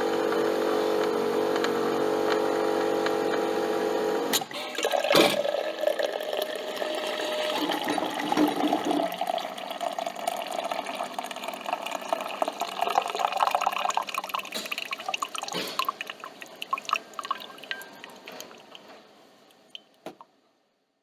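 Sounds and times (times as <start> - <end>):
faint coffee machine hum: 0.0 - 20.2
coffee trickling into cup: 4.6 - 18.9
coffee dripping: 4.8 - 18.9.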